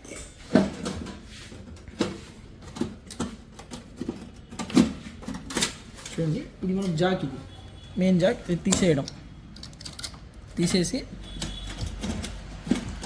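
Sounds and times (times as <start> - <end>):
metal tools knocking and clicking: 0.0 - 1.2, 2.0 - 6.2, 8.6 - 10.3, 11.2 - 13.0.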